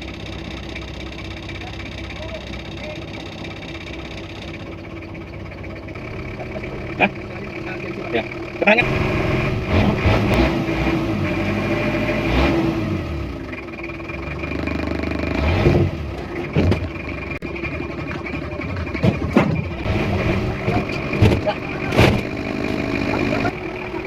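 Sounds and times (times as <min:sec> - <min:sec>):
vehicle engine revving: 0:05.7 - 0:24.0.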